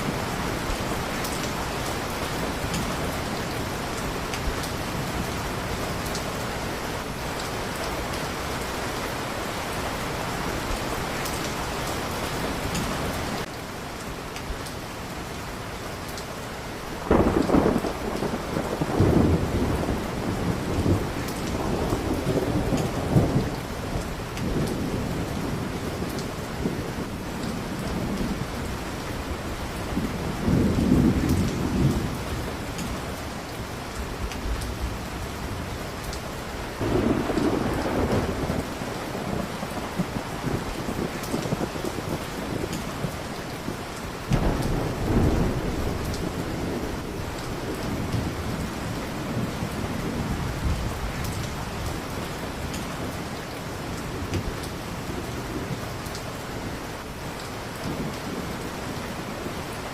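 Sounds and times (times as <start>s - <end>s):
steady rain: 0.0s - 59.9s
rolling thunder: 17.0s - 28.8s, 29.6s - 32.8s, 36.8s - 53.1s.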